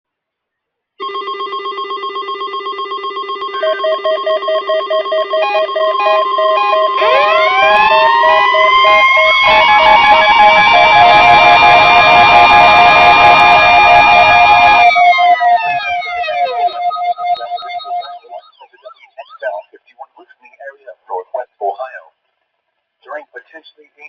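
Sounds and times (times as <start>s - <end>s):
buzzing pulsed alarm tone: 1.0s - 18.0s
siren winding up: 1.0s - 18.9s
rapid beeping: 1.0s - 20.7s.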